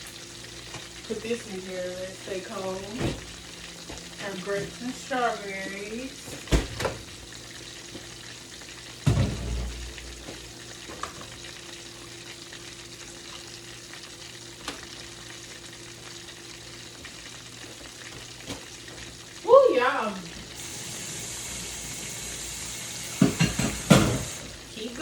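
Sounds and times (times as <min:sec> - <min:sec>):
low steady hum: 0:00.0 - 0:17.4
food sizzling in a pan: 0:00.0 - 0:25.0.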